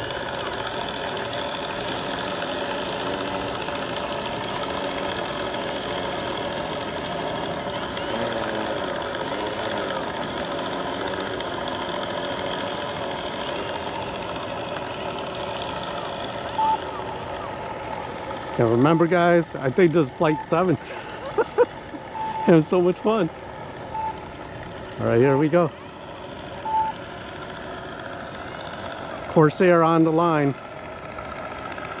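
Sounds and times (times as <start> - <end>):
simulated engine idling from speaker: 0.0 - 32.0
short beep: 16.6 - 16.8, 22.2 - 22.6, 26.6 - 27.0.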